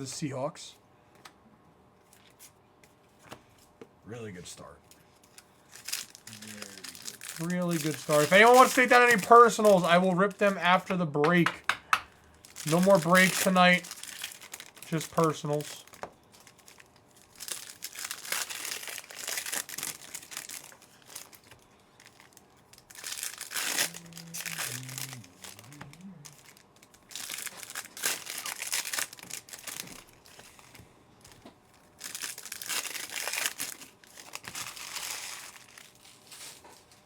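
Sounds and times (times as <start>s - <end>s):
foil wrappers tearing and crinkling: 5.2s - 11.4s, 12.3s - 37.0s.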